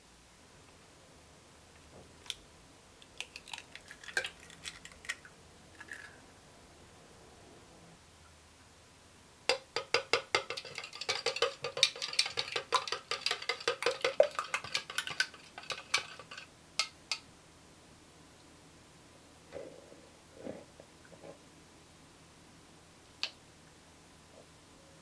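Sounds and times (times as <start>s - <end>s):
utensil beating batter in bowl: 9.5s - 17.3s.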